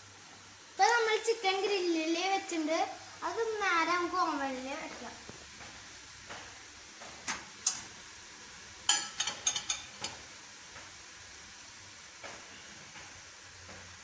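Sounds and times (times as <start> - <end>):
metal grill rack clinking: 8.9 - 10.2.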